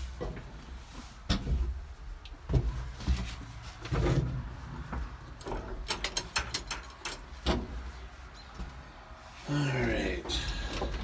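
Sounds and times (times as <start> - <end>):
thumps and knocks in tractor cab: 1.3 - 6.6, 7.4 - 7.9.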